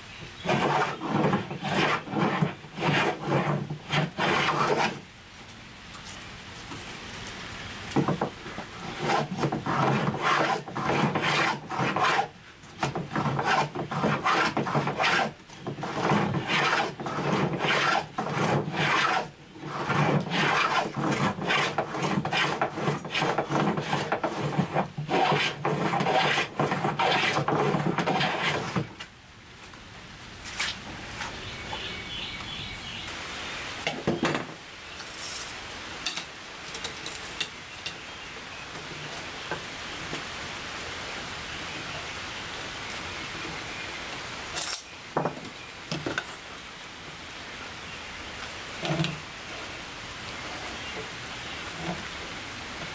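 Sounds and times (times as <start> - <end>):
hand tool scraping wood: 0.3 - 5.0, 8.0 - 29.1, 51.8 - 52.1.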